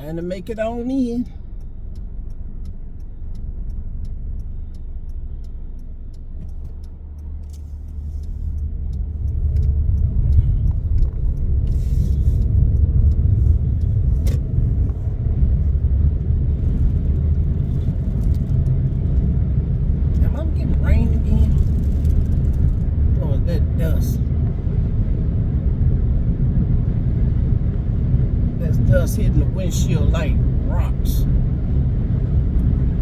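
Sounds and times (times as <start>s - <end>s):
dust ticking on windshield: 0.0s - 15.3s
road and wind rumble: 0.0s - 33.0s.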